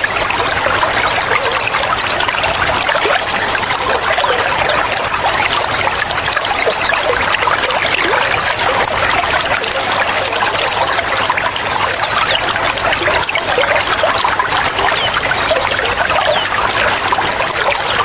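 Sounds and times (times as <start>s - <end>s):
running water: 0.0s - 18.0s
birds chirping: 9.6s - 16.8s.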